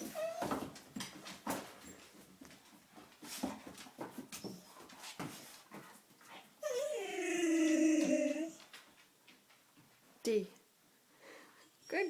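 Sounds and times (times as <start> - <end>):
dog whimpering: 0.0 - 0.6, 6.6 - 8.7.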